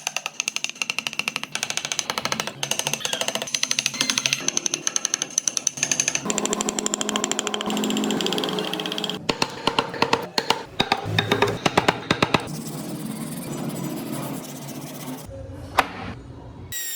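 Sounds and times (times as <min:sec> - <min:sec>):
power tool chattering on wood: 0:00.0 - 0:12.5.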